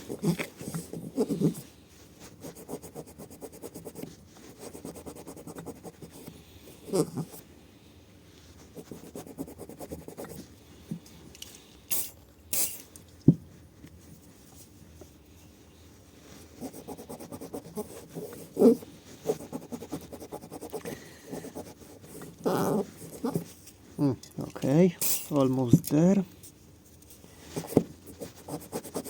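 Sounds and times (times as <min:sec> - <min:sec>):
short hisses: 0:11.9 - 0:12.8.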